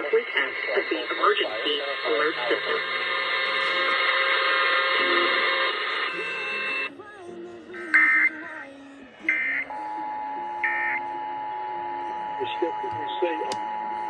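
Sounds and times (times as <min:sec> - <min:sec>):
background music: 0:06.1 - 0:14.0.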